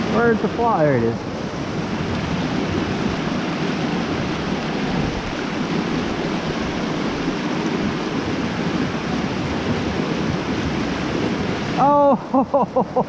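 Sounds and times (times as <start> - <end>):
creek water flowing: 0.0 - 13.0.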